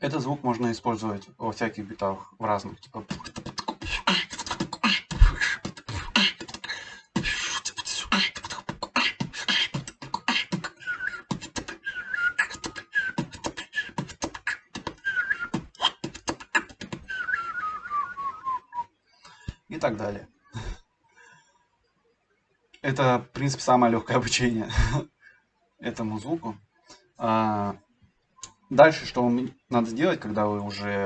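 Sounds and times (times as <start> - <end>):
beatboxing: 2.5 - 18.0
short mouth whistles: 3.1 - 6.5, 7.2 - 19.6.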